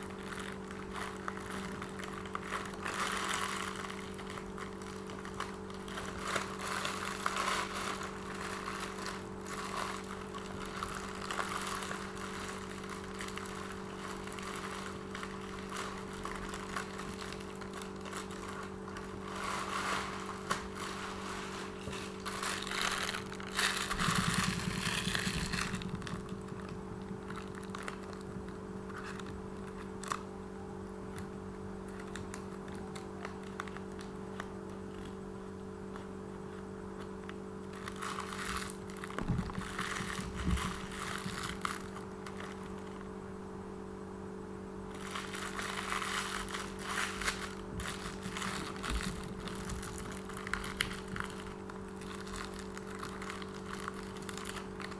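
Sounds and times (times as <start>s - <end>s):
steady low hum: 0.0s - 54.9s
paper scratching and rustling: 0.5s - 30.0s, 37.7s - 42.9s
low rumble: 21.0s - 28.6s.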